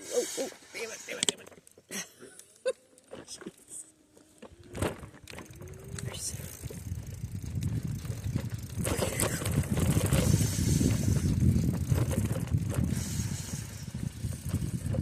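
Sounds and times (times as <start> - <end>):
bike tyres rumbling on dirt: 4.4 - 15.0.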